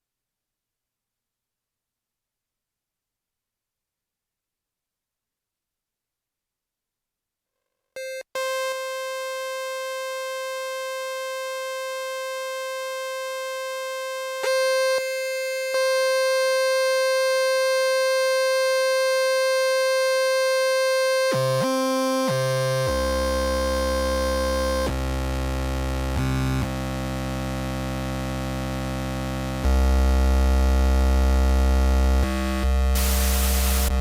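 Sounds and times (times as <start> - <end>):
synthesizer electronic drone: 32.2 - 34.0.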